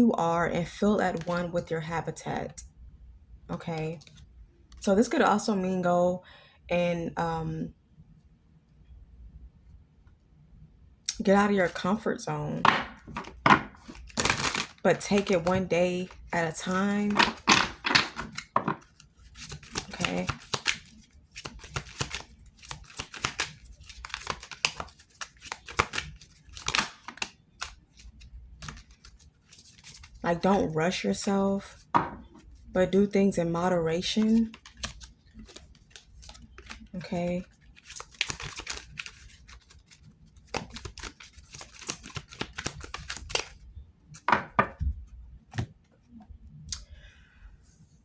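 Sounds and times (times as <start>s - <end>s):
cards being shuffled: 1.1s - 1.5s, 12.6s - 30.2s, 34.2s - 43.6s.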